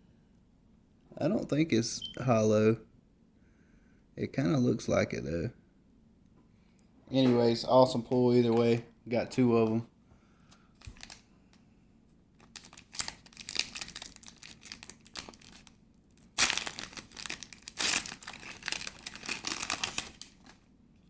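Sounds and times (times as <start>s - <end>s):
foil wrapper crinkling: 10.8s - 11.2s, 12.4s - 20.7s.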